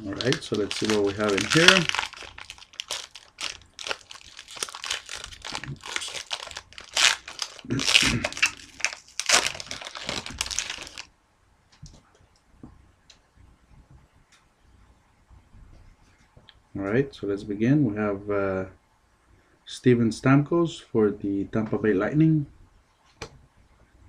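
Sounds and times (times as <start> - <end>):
wrapper tearing and crinkling: 0.0 - 11.1.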